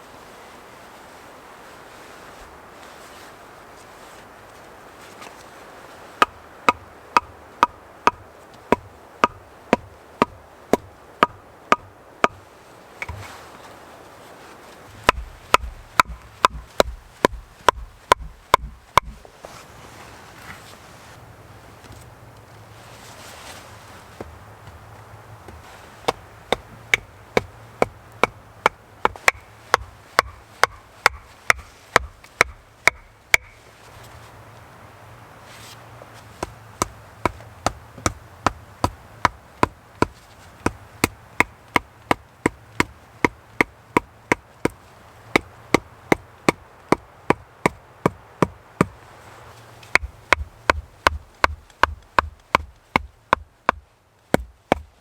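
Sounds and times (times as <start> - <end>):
wood being chopped: 6.2 - 12.4, 13.0 - 13.3, 14.9 - 19.3, 25.5 - 33.6, 36.4 - 49.0, 49.8 - 54.9.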